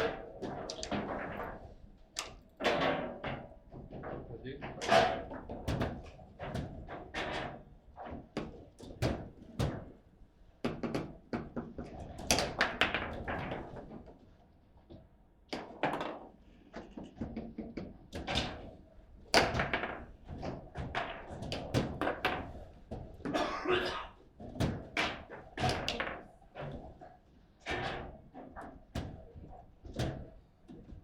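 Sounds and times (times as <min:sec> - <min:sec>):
table football knocks and thunks: 0:19.4 - 0:22.6.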